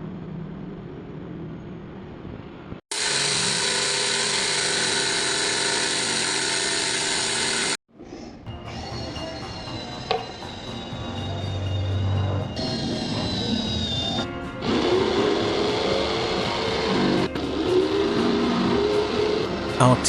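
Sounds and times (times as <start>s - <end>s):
power tool running: 2.9s - 7.8s, 12.6s - 20.0s.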